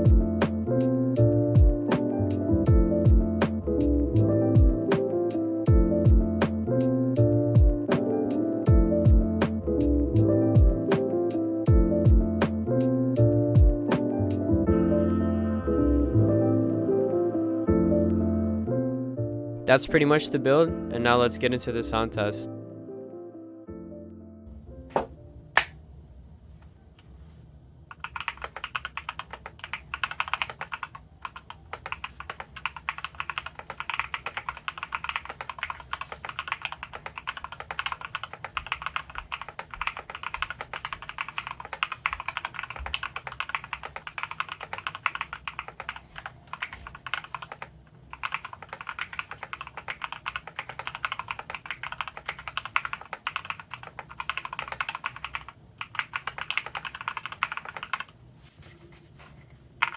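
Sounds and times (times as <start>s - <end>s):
mechanical keyboard typing: 27.9s - 58.2s.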